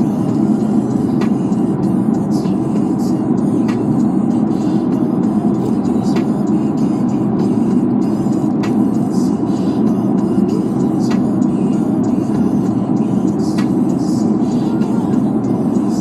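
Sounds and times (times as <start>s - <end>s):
car road noise rumble: 0.0s - 16.0s.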